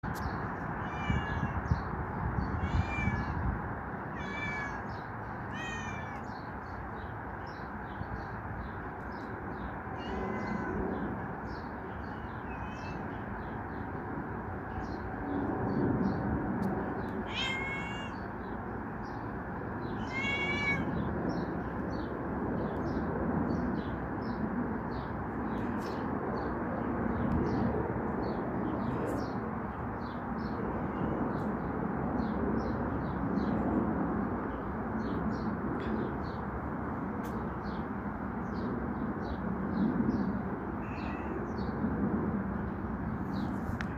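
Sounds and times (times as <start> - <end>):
small birds chirping: 0.1 - 43.9
cat meowing: 0.8 - 1.8, 2.5 - 3.4, 4.1 - 6.3, 10.0 - 11.0, 12.1 - 13.1, 17.2 - 18.2, 20.0 - 21.0, 40.8 - 41.5.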